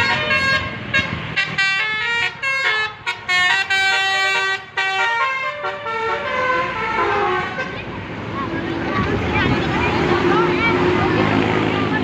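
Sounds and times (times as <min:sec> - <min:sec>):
multi-tone bus horn tune: 0:00.0 - 0:07.9.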